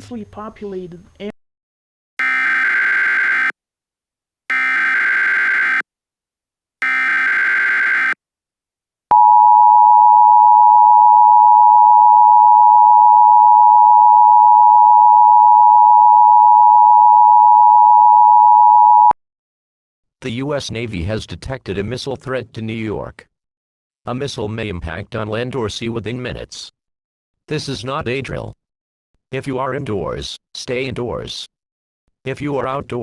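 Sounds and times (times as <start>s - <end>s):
digital data tone bursts: 4.5s - 5.8s, 6.8s - 8.2s
two-tone attention signal: 6.8s - 8.2s.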